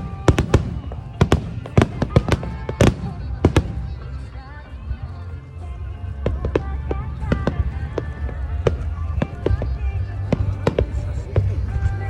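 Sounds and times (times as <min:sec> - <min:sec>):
low rumble: 0:00.0 - 0:12.0.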